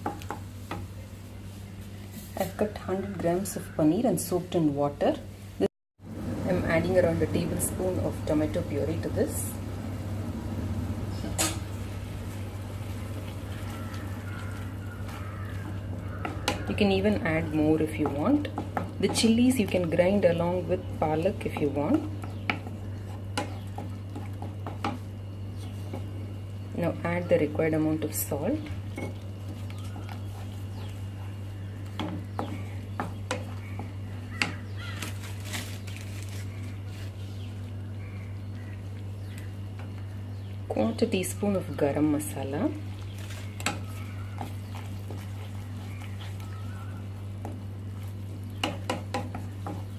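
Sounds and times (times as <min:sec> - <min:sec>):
steady low hum: 0:00.0 - 0:49.9
spoon knocking on a pan: 0:48.6 - 0:49.9.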